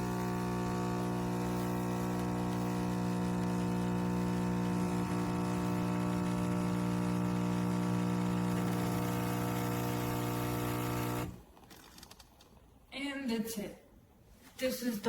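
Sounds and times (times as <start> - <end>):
espresso machine pump buzzing: 0.0 - 11.4.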